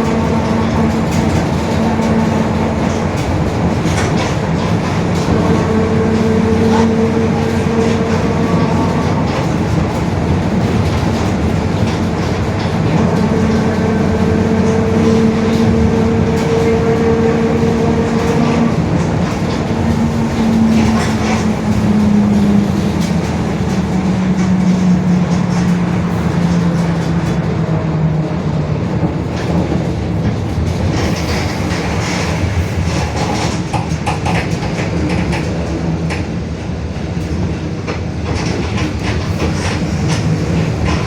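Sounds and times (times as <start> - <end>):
bus differential humming whine: 0.0 - 41.0
bus engine and road noise: 0.0 - 41.0.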